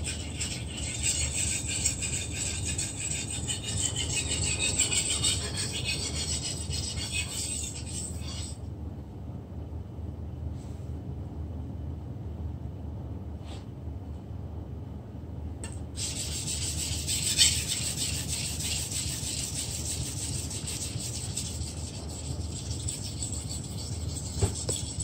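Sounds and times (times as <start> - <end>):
knife scraping on whetstone: 0.0 - 8.6, 16.0 - 25.0.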